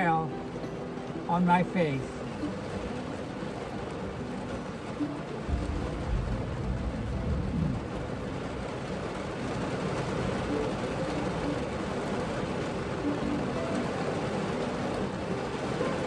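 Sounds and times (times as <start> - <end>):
heavy rain on car roof: 0.0 - 16.0
low rumble: 5.5 - 9.5.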